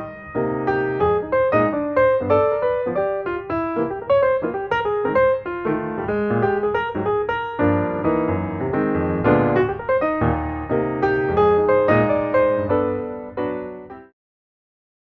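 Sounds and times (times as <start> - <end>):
piano run with chords: 0.0 - 14.1.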